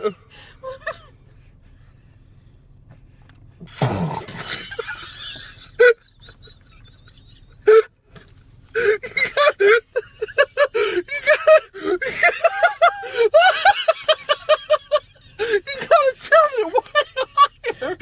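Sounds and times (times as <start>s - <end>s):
person hiccuping: 3.7s - 4.5s
giggling laughter: 4.4s - 7.9s, 8.8s - 18.0s.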